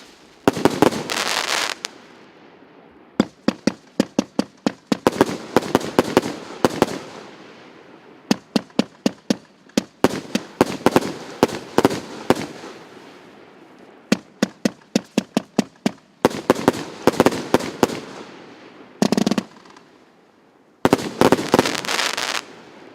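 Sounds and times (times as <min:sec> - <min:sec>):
fireworks firing quick shots: 0:00.0 - 0:02.0, 0:03.2 - 0:07.3, 0:08.3 - 0:12.9, 0:19.0 - 0:19.9, 0:20.8 - 0:22.7
fireworks crackling bursts: 0:00.0 - 0:02.5, 0:03.2 - 0:20.2, 0:20.8 - 0:22.9.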